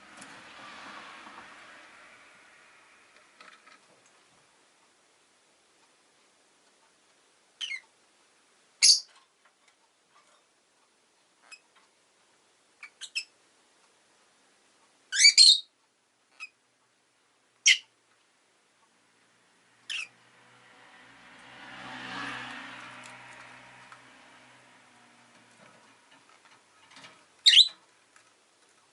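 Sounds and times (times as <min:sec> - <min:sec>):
bird chirps and squawks: 0:07.6 - 0:07.8, 0:08.8 - 0:09.1, 0:15.1 - 0:15.7, 0:17.6 - 0:17.8, 0:19.9 - 0:20.1, 0:27.4 - 0:27.8.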